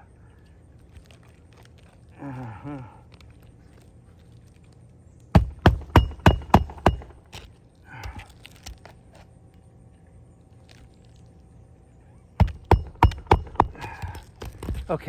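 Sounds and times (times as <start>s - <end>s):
hammer blows on nails: 5.3s - 7.4s, 12.4s - 14.9s.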